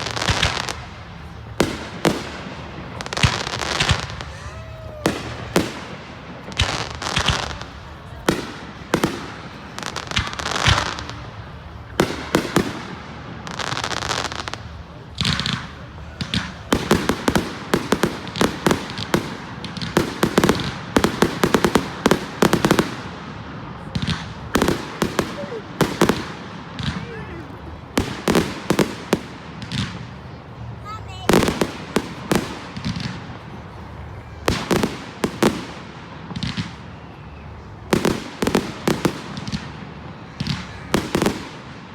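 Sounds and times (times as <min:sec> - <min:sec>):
fireworks bangs with crackle: 0:00.0 - 0:41.9.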